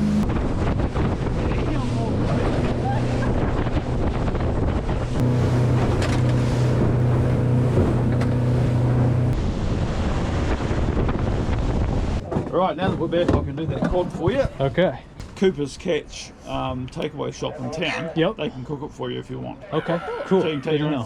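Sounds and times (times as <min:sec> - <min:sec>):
wind buffeting microphone: 0:00.0 - 0:14.8
boat engine running: 0:00.0 - 0:15.5
water rushing past hull: 0:00.0 - 0:19.2.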